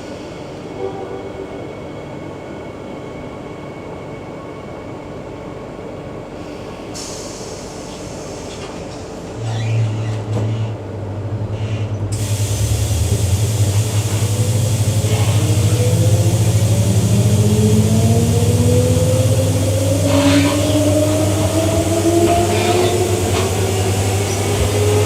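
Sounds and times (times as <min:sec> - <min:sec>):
train motor hum and whine: 0:12.1 - 0:25.0.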